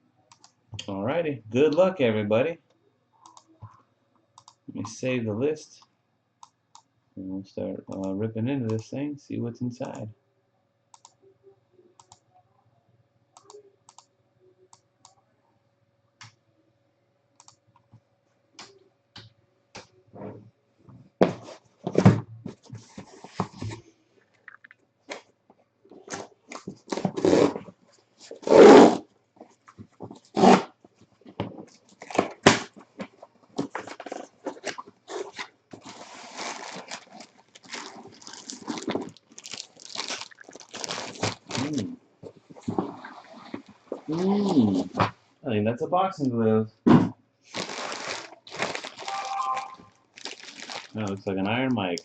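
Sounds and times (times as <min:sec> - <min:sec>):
packaging tearing and crinkling: 0:33.6 - 0:41.9, 0:47.5 - 0:51.2.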